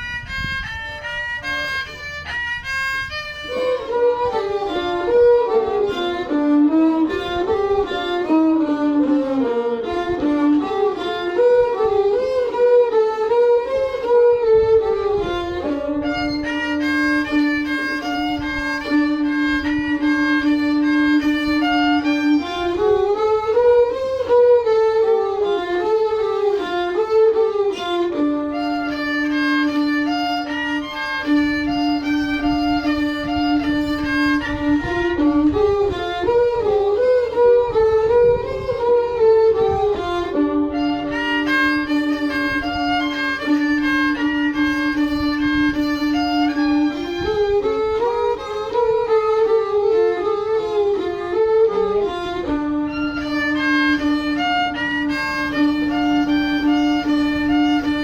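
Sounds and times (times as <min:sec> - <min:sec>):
bowed fiddle melody: 0:00.0 - 0:58.0.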